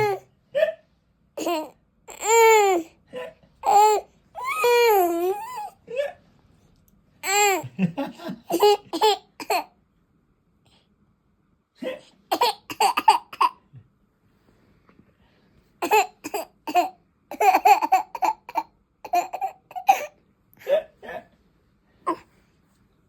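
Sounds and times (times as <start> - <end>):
toddler squealing and giggling: 3.7 - 5.8.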